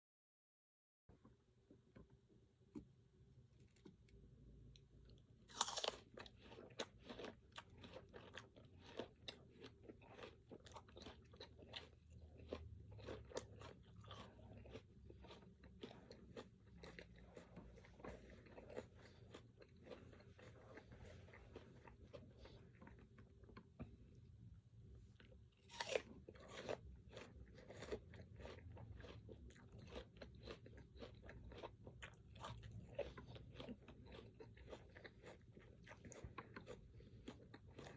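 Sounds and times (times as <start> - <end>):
crunchy chewing: 3.6 - 24.3, 25.1 - 37.9
crisp bite: 5.5 - 7.3, 25.6 - 28.0.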